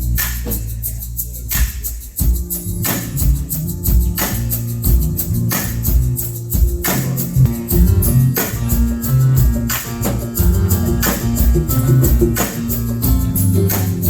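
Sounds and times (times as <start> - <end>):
gospel band instrumental: 1.6 - 14.0.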